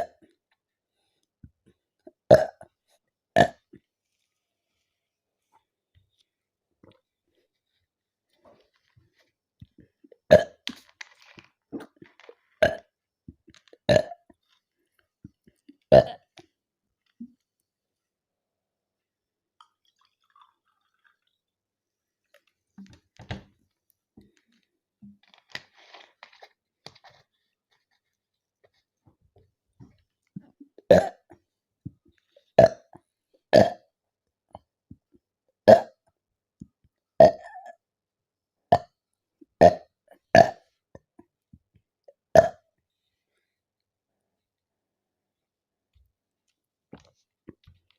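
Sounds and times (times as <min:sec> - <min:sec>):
woman burping: 0:02.3 - 0:02.6, 0:10.3 - 0:10.6, 0:12.6 - 0:12.8, 0:13.9 - 0:14.2, 0:30.9 - 0:31.3, 0:37.2 - 0:37.8, 0:42.4 - 0:42.6.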